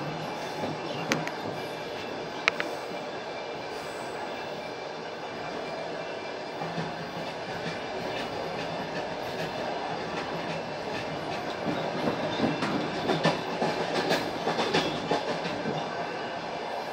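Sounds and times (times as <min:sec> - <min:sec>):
train wheels clattering over rail joints: 0:06.6 - 0:15.8.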